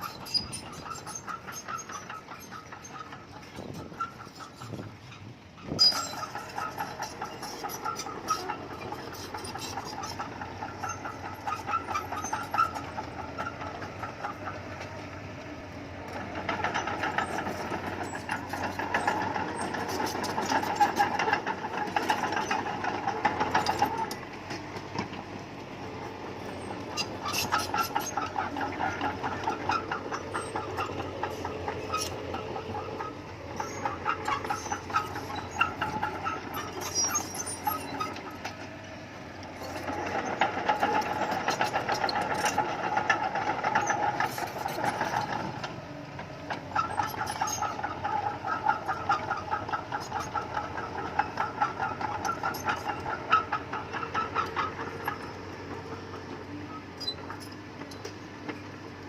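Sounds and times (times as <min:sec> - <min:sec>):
bulldozer diesel engine: 0:00.0 - 0:59.0
bulldozer tracks clattering: 0:00.0 - 0:59.0.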